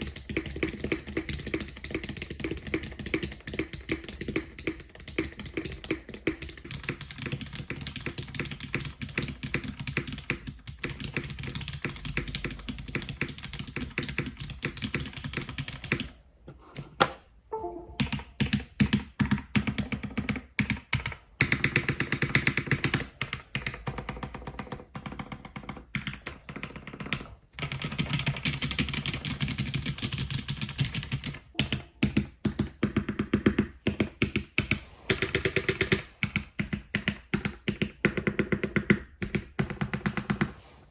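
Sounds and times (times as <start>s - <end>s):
fast typing on mechanical keyboard: 0.0s - 16.1s, 18.4s - 40.5s.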